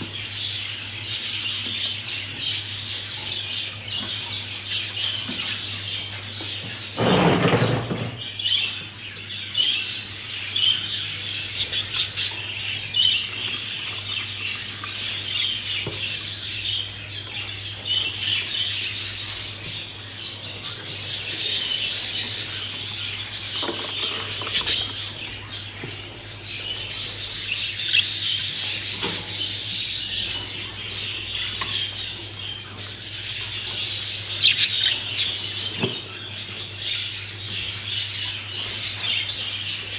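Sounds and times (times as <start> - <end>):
budgerigars chattering: 8.4 - 39.8.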